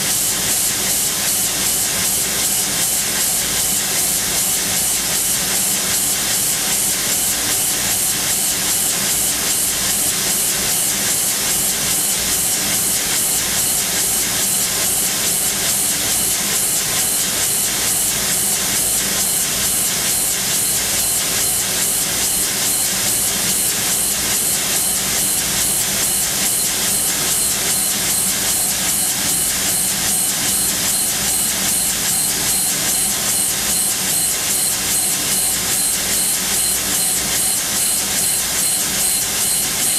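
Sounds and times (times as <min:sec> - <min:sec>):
machine spindle drilling steel: 0:20.6 - 0:39.9.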